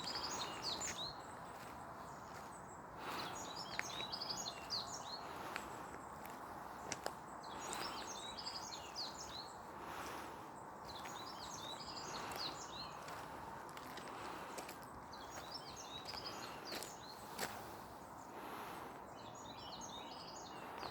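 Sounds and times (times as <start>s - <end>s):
songbird chirping: 0.0s - 20.9s.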